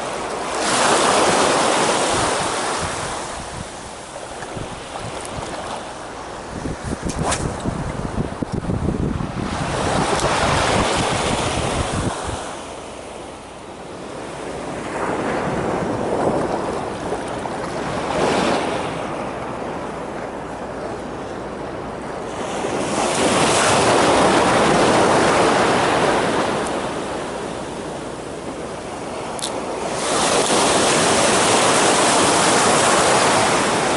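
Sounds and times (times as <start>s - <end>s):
wind buffeting microphone: 0.0s - 13.0s, 13.8s - 33.9s
waves breaking on shore: 0.0s - 33.9s.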